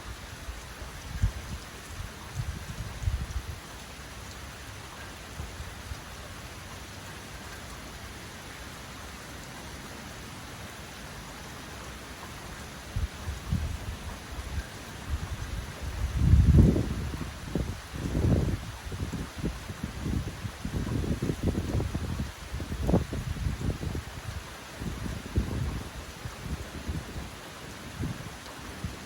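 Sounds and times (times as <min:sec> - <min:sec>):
heavy rain: 0:00.0 - 0:29.0
wind gusts rumbling: 0:12.9 - 0:29.0.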